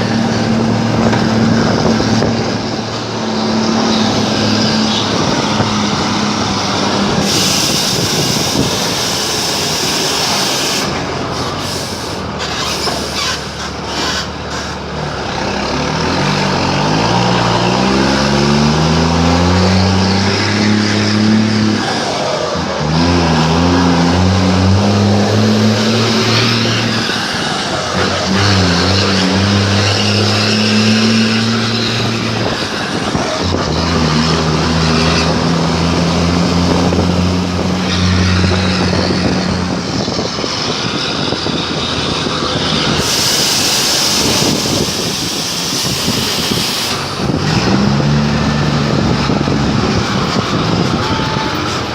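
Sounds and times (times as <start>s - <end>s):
loud truck engine: 0.0s - 51.9s
loud hiss: 7.2s - 13.4s, 43.0s - 47.2s.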